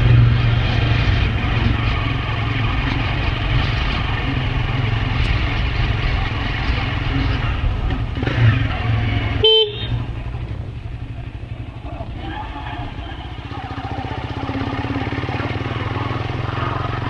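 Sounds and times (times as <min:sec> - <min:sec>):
road traffic noise: 0:00.0 - 0:17.0
vehicle horn honk: 0:09.4 - 0:10.1.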